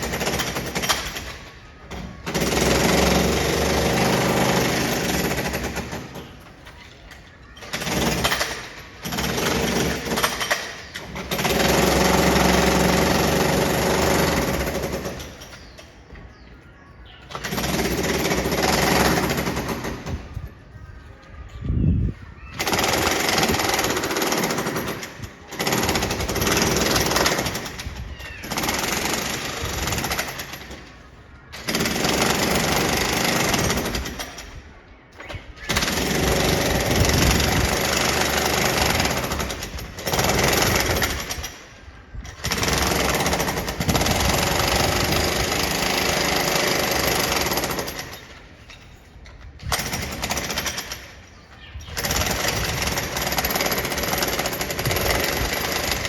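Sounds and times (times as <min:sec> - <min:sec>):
jackhammer chiselling concrete: 0:00.0 - 0:06.7, 0:07.5 - 0:15.8, 0:17.3 - 0:20.4, 0:22.6 - 0:30.9, 0:31.5 - 0:34.6, 0:35.6 - 0:48.5, 0:49.6 - 0:56.0.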